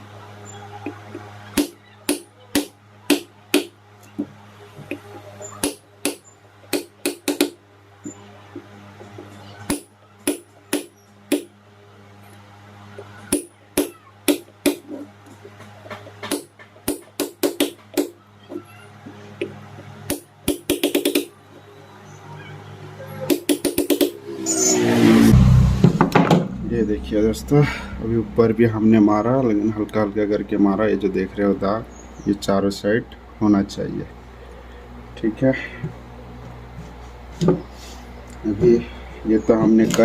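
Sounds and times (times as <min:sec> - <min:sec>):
hammer tapping metal punch: 0:05.6 - 0:07.6, 0:20.1 - 0:21.3.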